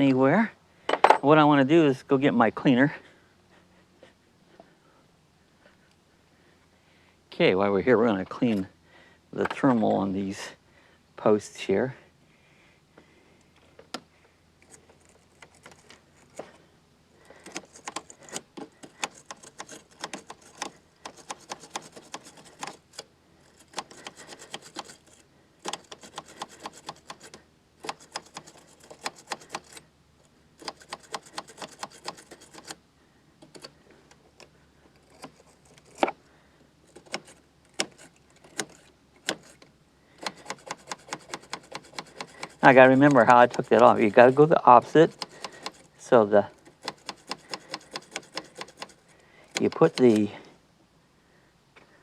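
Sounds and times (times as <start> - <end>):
brush scraping battery posts: 13.0 - 32.8, 33.4 - 50.6.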